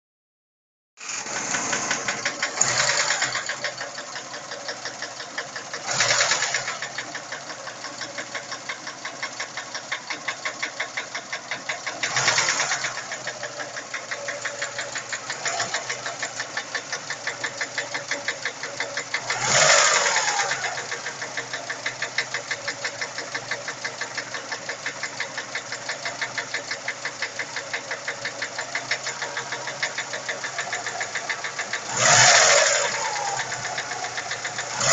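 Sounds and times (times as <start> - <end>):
engine idling with rhythmic knock: 1.2 - 34.9
engine throttle blips: 11.8 - 34.9.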